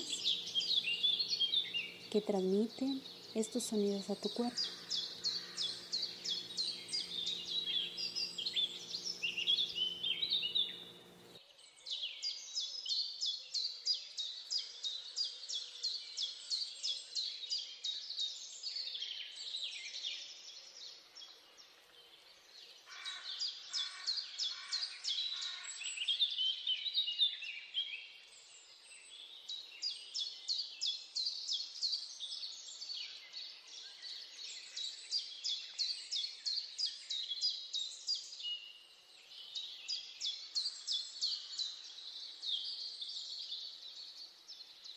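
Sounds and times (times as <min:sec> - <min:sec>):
birds chirping and trilling: 0:00.0 - 0:13.0, 0:22.5 - 0:26.6.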